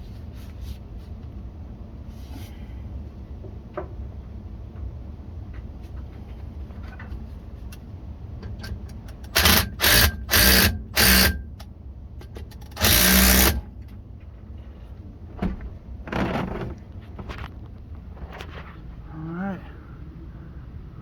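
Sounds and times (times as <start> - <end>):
cordless power driver bursts: 9.3 - 11.4, 12.7 - 13.6.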